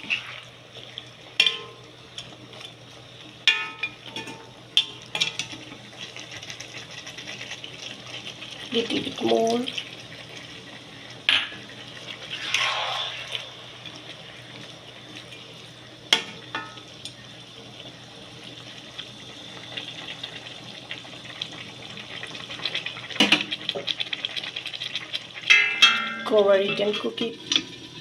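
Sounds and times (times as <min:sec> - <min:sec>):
water hissing in hot pan: 0:00.0 - 0:04.0, 0:05.0 - 0:28.0
chicken sizzling in a pan: 0:00.0 - 0:28.0
spoon clattering against pan: 0:25.5 - 0:27.1.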